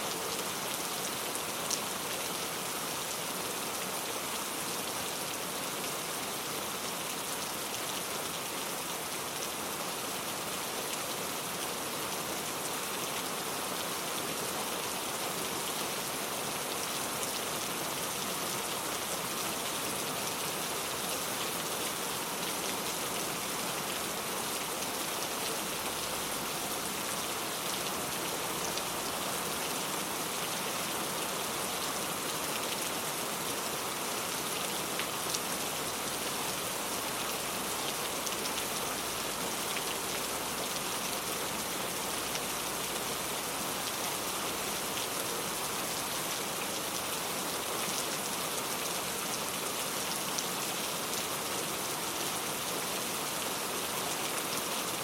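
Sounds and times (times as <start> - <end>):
rain falling on a surface: 0.0 - 55.0.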